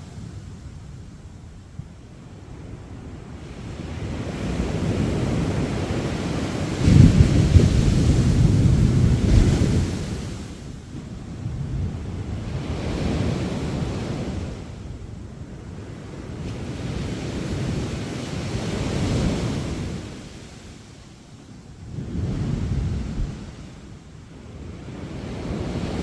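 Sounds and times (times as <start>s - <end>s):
sea waves breaking on sand: 3.5s - 10.9s.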